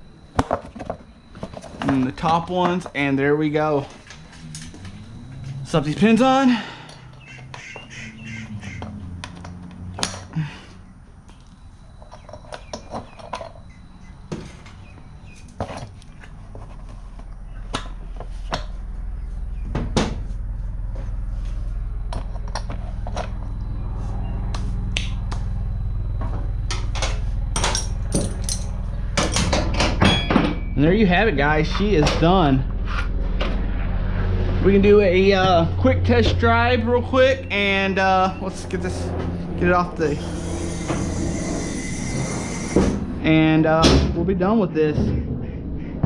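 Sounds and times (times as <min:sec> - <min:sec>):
steady low hum: 0:00.0 - 0:46.0.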